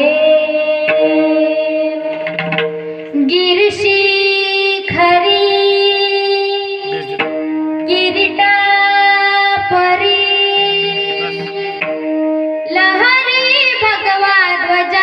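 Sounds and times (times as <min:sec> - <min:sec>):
woman singing wordless notes: 0:03.1 - 0:15.0.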